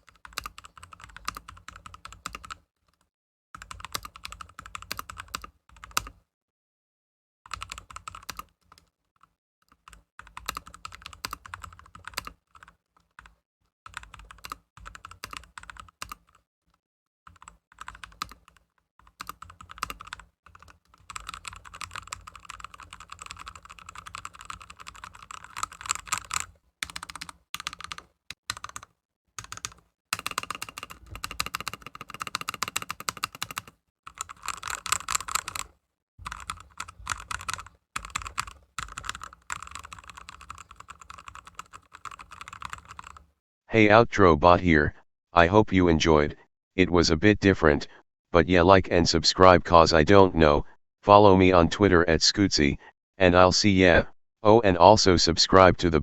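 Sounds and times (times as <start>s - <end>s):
mechanical keyboard typing: 0.0s - 2.6s, 3.6s - 6.1s, 7.5s - 8.8s, 9.7s - 13.3s, 13.9s - 16.4s, 17.3s - 43.3s.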